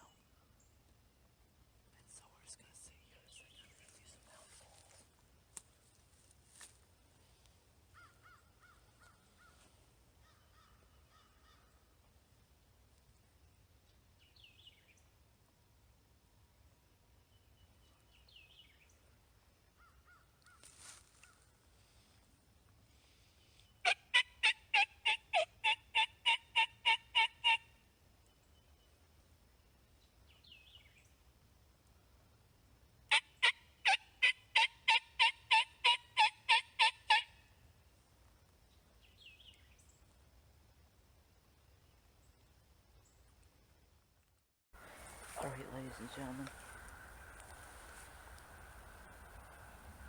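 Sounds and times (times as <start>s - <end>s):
faint bird chirp: 2.0s - 5.1s
turkey yelps: 23.8s - 27.6s, 33.1s - 37.3s
distant bird calls: 44.8s - 50.0s.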